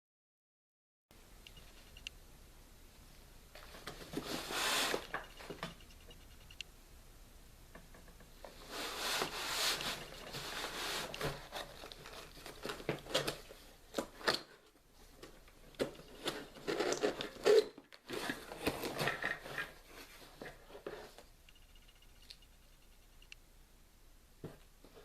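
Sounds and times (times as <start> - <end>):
rustling and rubbing: 3.5 - 6.5, 8.4 - 14.1, 15.0 - 21.3.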